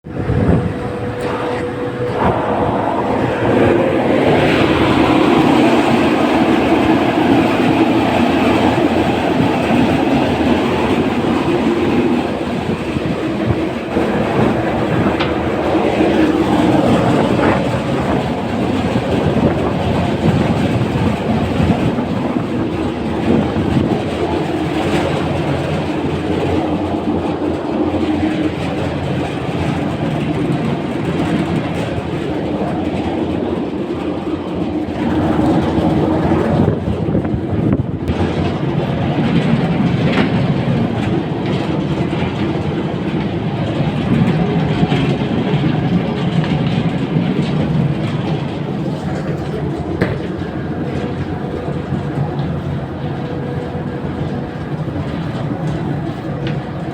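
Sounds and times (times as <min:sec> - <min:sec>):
air handling unit blower running: 0:00.0 - 0:56.9
low hum: 0:00.0 - 0:56.9.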